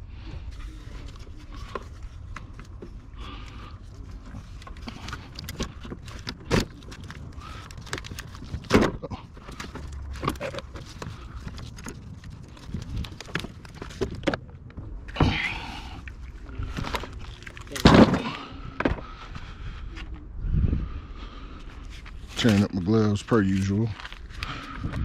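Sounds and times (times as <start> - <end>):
steady low rumble: 0.0 - 25.0
loud thunks: 8.7 - 9.1, 17.8 - 19.0.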